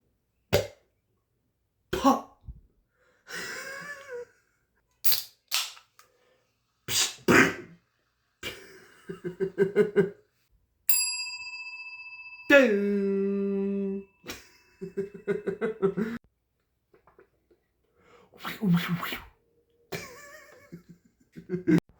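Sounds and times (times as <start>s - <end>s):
wavering voice-like sound: 12.5s - 14.4s.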